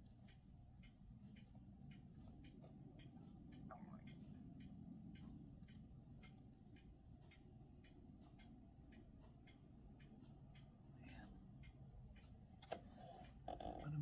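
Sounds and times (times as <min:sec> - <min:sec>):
low background rumble: 0:00.0 - 0:12.6
faint ticking: 0:00.0 - 0:14.0.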